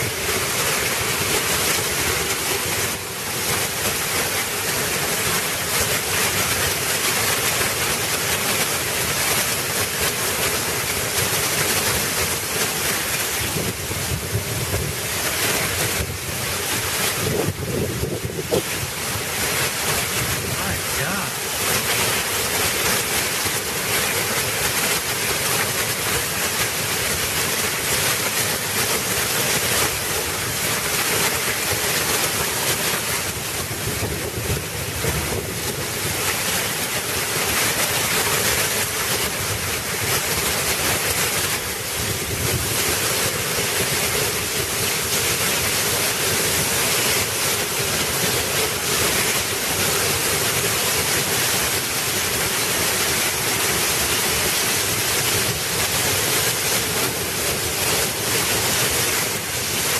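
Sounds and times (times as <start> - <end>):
torrential rain pouring: 0.0 - 59.9
wind buffeting microphone: 17.2 - 18.9.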